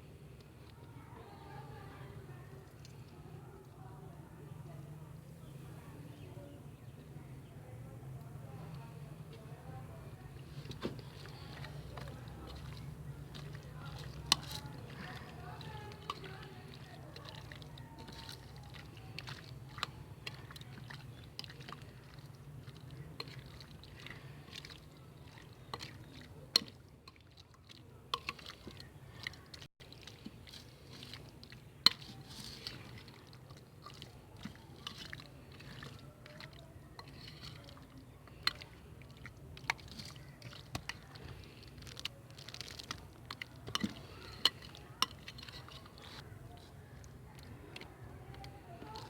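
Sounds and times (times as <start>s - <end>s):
wet squishing of meat by hand: 10.2s - 49.0s.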